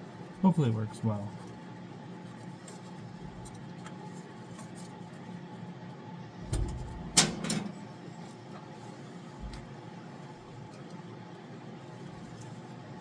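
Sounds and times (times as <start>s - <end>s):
steady low hum: 0.0s - 4.3s, 6.2s - 11.4s
tools knocking and clattering: 6.5s - 7.8s.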